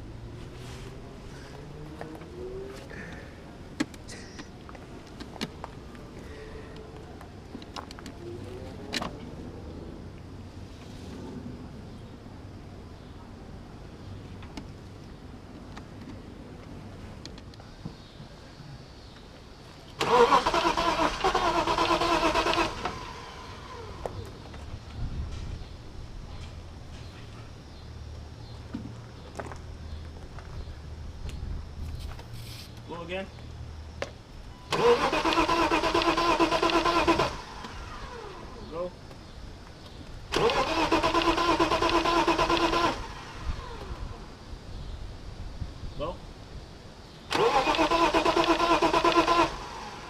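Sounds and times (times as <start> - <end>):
car starter motor cranking: 20.0 - 23.9, 34.7 - 38.4, 40.3 - 43.8, 47.3 - 50.0.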